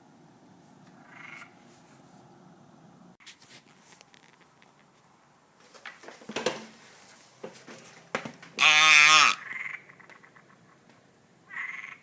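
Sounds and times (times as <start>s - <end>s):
wavering animal call: 8.6s - 10.6s.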